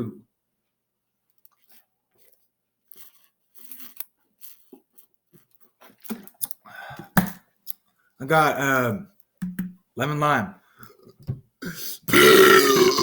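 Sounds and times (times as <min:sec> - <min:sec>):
crunching and rustling handling: 0:01.5 - 0:06.4.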